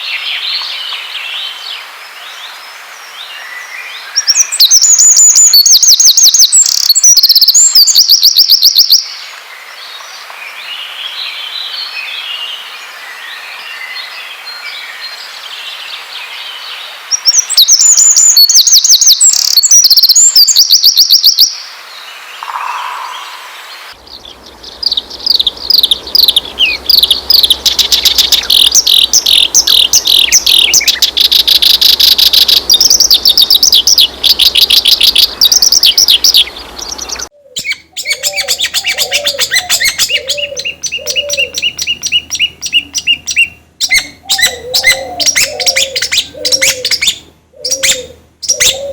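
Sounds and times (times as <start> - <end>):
songbirds trilling: 0.0 - 48.9
low whistled bird note: 22.4 - 43.1.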